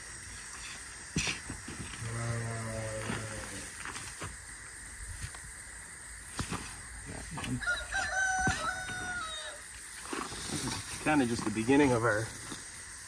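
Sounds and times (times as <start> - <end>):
rooster crowing: 7.6 - 9.7.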